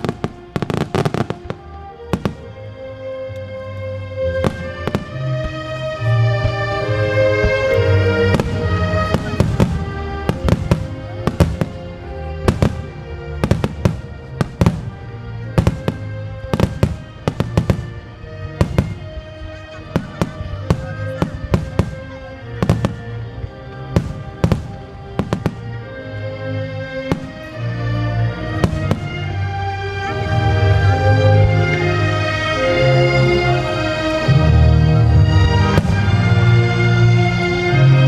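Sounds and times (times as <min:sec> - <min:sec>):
music with long held notes: 0:00.0 - 0:38.0.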